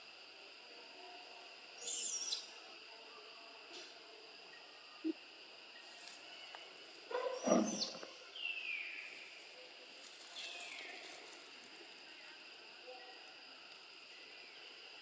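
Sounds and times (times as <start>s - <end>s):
animal squealing: 7.3s - 8.0s.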